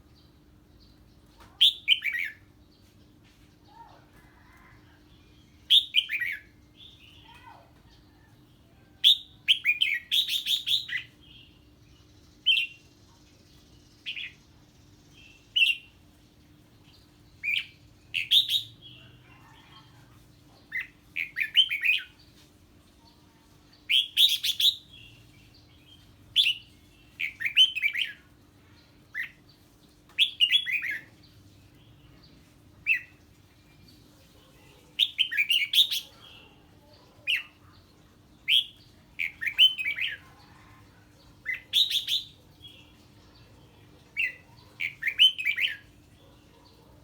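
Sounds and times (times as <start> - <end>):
bird chattering song: 0.0 - 7.6, 9.0 - 47.0.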